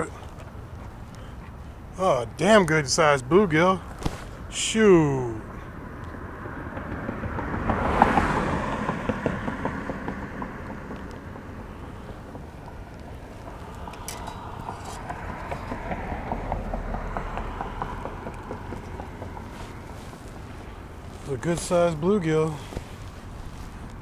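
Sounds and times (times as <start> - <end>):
steady traffic background: 0.0 - 24.0
vehicle passing: 4.4 - 24.0
small clicks and rustles: 22.6 - 24.0.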